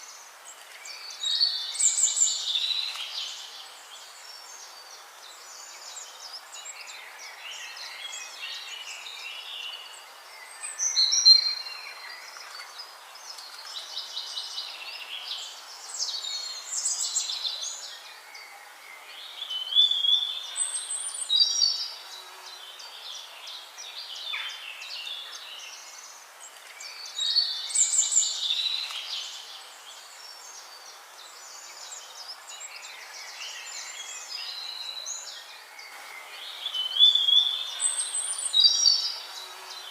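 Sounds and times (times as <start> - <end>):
steady background hiss: 0.0 - 39.9
birds chirping and whistling: 31.5 - 39.9.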